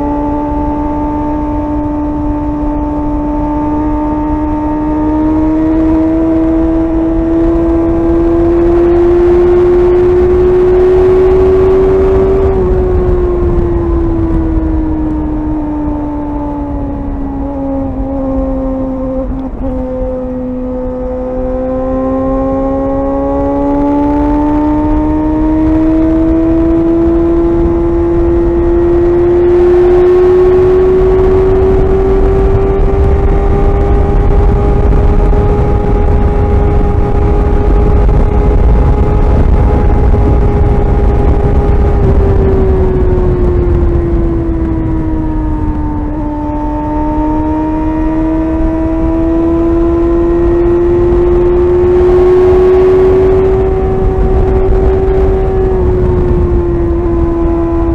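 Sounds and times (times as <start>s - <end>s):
motorcycle engine running: 0.0s - 57.9s
low rumble: 0.9s - 57.9s.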